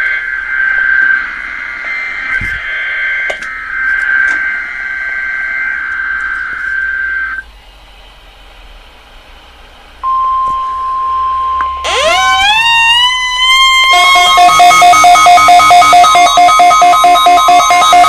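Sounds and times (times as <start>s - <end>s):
buzzing data screech: 11.8s - 18.0s.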